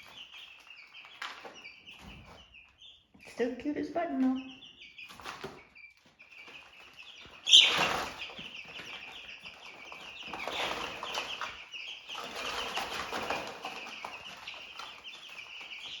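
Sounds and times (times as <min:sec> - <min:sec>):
chicks peeping: 0:00.0 - 0:16.0
wings flapping and rustling: 0:05.0 - 0:16.0.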